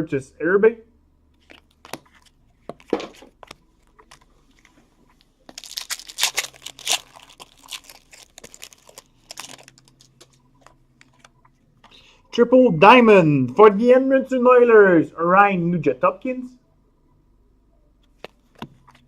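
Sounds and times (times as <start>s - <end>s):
cards clicking and rustling: 1.4s - 4.7s, 5.5s - 11.3s
wrapper crinkling and tearing: 5.5s - 10.3s.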